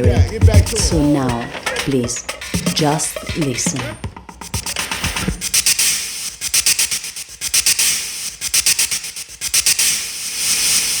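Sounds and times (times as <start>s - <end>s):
steam hissing from street vent: 5.4s - 11.0s.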